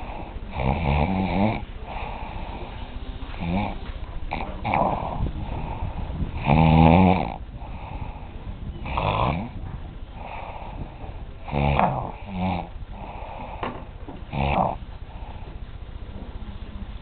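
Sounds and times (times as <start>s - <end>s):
man snoring loudly: 0.0s - 2.7s, 3.4s - 8.2s, 8.8s - 9.6s, 10.2s - 13.6s, 14.3s - 14.8s
soft breathing: 0.0s - 17.0s.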